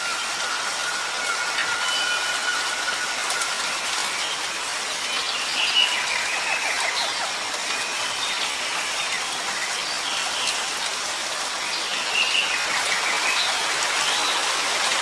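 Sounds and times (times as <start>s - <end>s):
thin steady whistle: 0.0s - 3.8s
steady rain falling: 0.0s - 15.0s.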